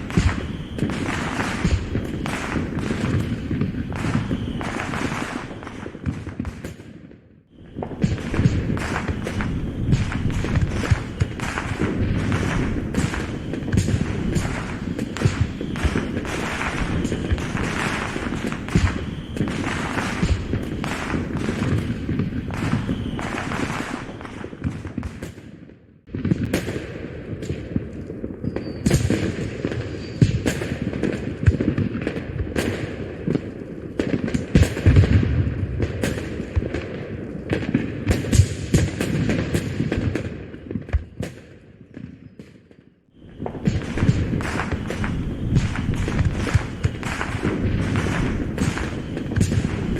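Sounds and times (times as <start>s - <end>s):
fireworks booming and crackling: 0.0s - 49.9s.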